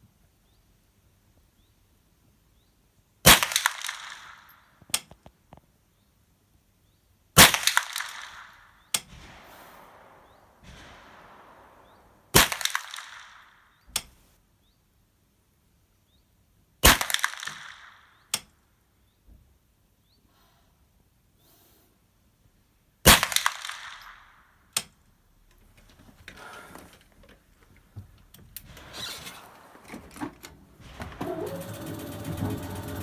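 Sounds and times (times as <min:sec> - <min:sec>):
rifle shots: 0:03.3 - 0:04.4, 0:07.4 - 0:13.6, 0:23.1 - 0:24.3, 0:28.6 - 0:33.0
handling noise rustling and clicking: 0:25.4 - 0:33.0.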